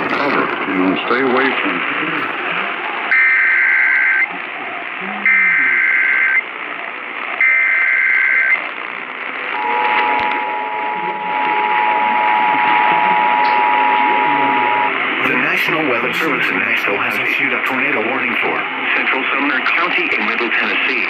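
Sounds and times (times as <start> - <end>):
radio static hiss: 0.0 - 21.0
steady two-tone attention signal: 9.6 - 17.5.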